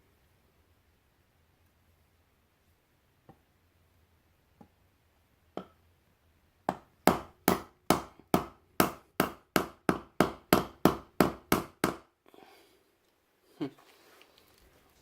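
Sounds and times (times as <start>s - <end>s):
hammer driving wooden wedge: 6.7s - 12.0s.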